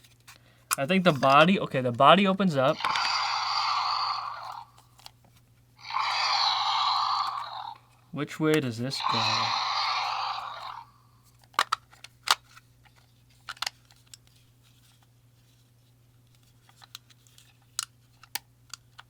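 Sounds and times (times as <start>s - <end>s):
faint steady hum: 0.0s - 19.0s
plastic toy parts clicking: 2.8s - 3.2s, 11.4s - 12.6s, 13.4s - 14.2s.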